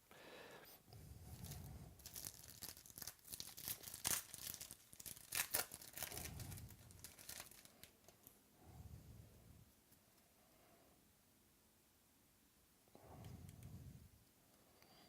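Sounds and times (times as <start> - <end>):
foil wrapper crinkling: 1.4 - 8.3.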